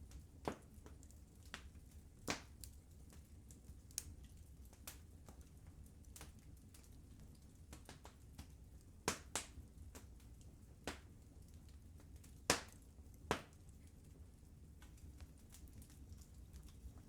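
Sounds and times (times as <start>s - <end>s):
wood fire crackling: 0.0s - 17.0s
sharp pops of fire: 12.4s - 13.6s.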